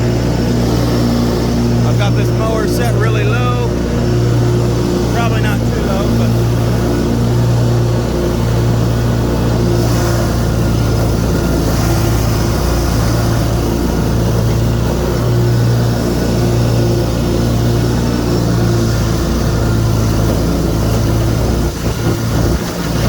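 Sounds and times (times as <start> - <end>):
mower engine running under load: 0.0 - 23.0.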